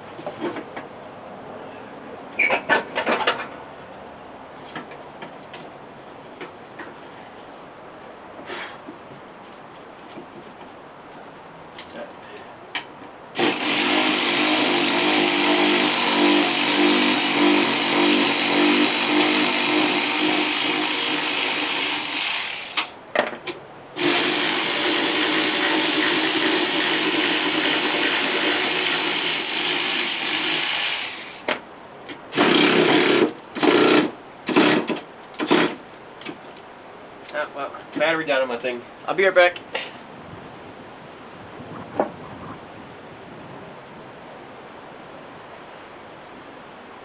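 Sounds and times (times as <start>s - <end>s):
cordless power tool running: 13.4s - 22.9s, 24.0s - 31.5s.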